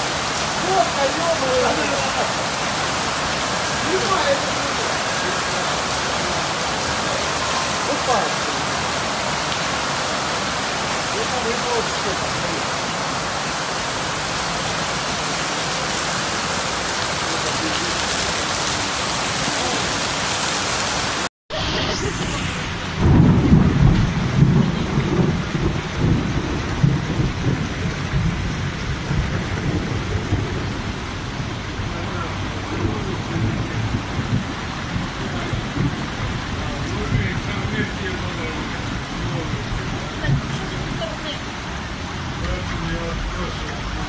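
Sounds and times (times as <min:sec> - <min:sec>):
heavy rain hissing: 0:00.0 - 0:44.0
gusting rumble: 0:21.5 - 0:44.0.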